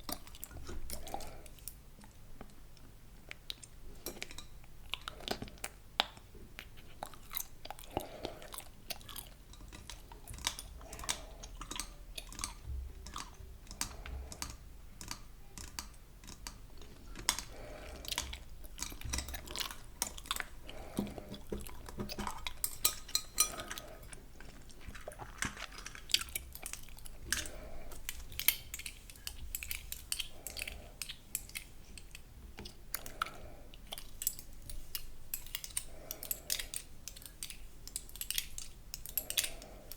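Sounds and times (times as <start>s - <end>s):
gum chewing mouth clicks: 4.9s - 39.9s.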